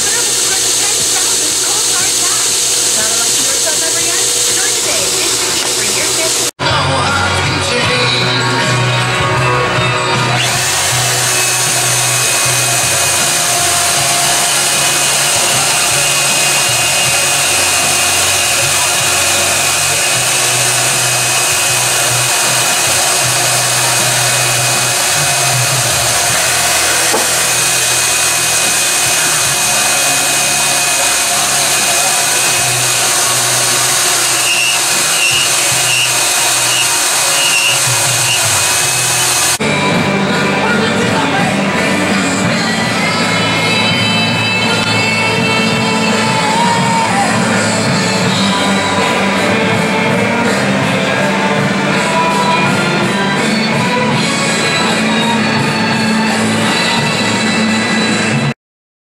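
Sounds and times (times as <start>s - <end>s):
power tool hissing: 0.0s - 6.6s, 10.0s - 39.6s.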